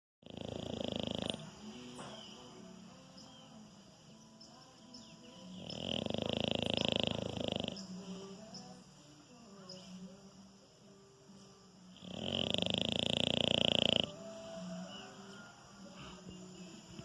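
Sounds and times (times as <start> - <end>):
dog snoring: 0.2 - 2.0, 5.4 - 8.4, 11.9 - 15.2.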